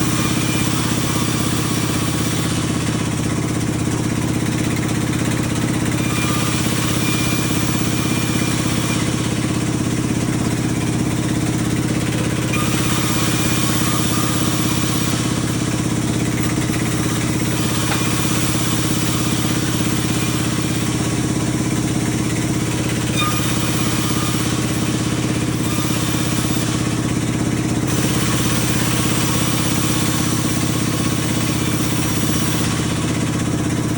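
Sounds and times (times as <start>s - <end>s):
sawmill engine drone: 0.0s - 33.9s.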